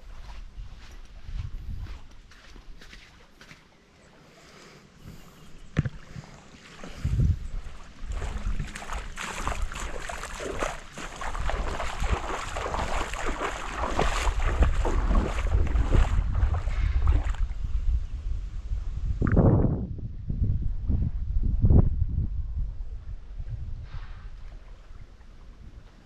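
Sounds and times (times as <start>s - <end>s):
wind rumbling on microphone: 0.0s - 3.0s, 5.0s - 26.0s
seawater splashing on shore: 5.8s - 17.5s.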